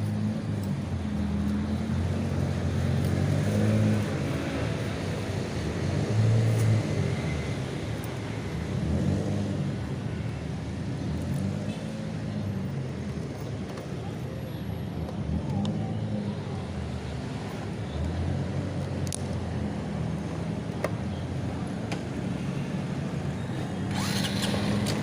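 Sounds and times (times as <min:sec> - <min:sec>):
road noise: 0:00.0 - 0:25.0
vehicle engine humming: 0:17.4 - 0:25.0.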